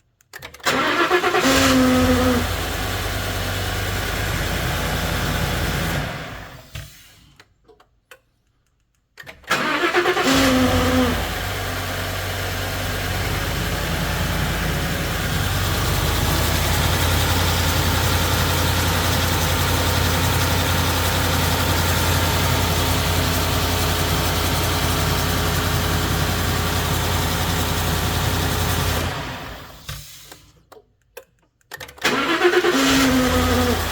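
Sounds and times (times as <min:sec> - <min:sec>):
engine idling: 0:10.8 - 0:29.9.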